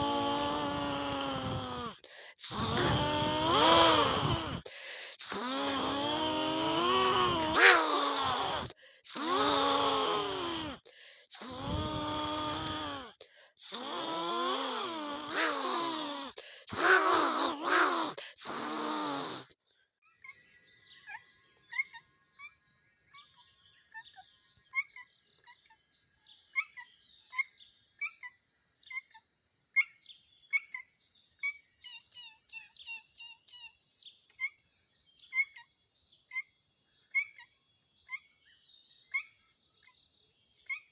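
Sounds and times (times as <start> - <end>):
high insect drone: 0.0 - 19.5.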